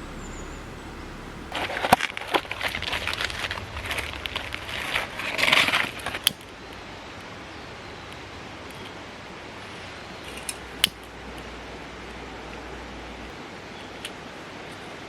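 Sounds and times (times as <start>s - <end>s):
steady hiss: 0.0s - 15.0s
small objects rustling and clattering: 1.5s - 6.3s
sharp clicks: 10.3s - 11.1s.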